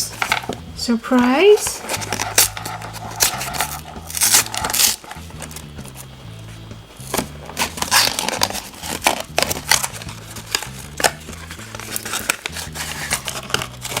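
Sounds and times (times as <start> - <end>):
soft background music: 0.0 - 14.0
wrapper crinkling and tearing: 1.7 - 5.7, 7.5 - 14.0.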